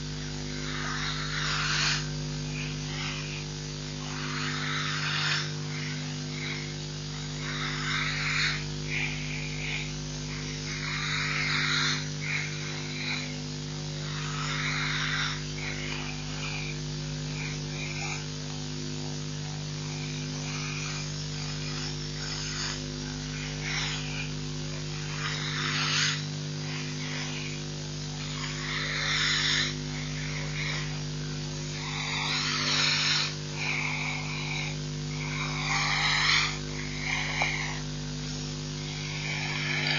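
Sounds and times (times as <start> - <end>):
electrical hum: 0.0 - 39.9.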